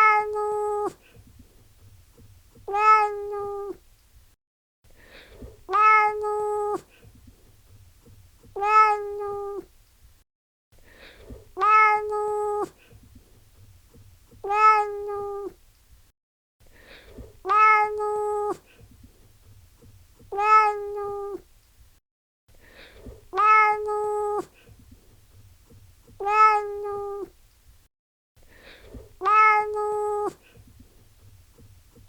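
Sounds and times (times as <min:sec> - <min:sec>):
cat meowing: 0:00.0 - 0:01.0, 0:02.7 - 0:03.8, 0:05.7 - 0:06.8, 0:08.6 - 0:09.6, 0:11.6 - 0:12.7, 0:14.4 - 0:15.6, 0:17.4 - 0:18.6, 0:20.3 - 0:21.4, 0:23.3 - 0:24.5, 0:26.2 - 0:27.3, 0:29.2 - 0:30.4.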